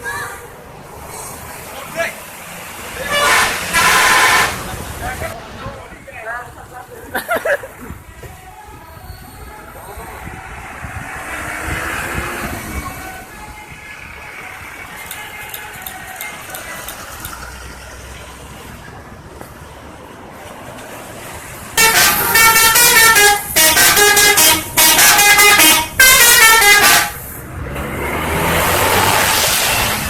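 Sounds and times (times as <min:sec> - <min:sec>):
vehicle passing: 0:00.1 - 0:06.6, 0:09.6 - 0:22.6, 0:26.8 - 0:30.0
musical air horn blasts: 0:03.0 - 0:04.7, 0:21.8 - 0:27.4.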